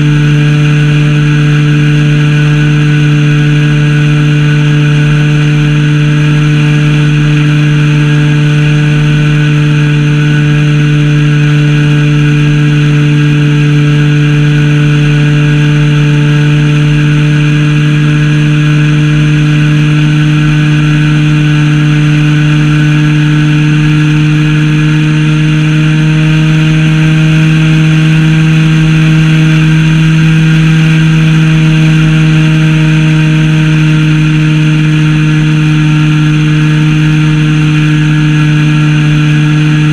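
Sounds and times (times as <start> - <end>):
model plane engine running: 0.0 - 39.9.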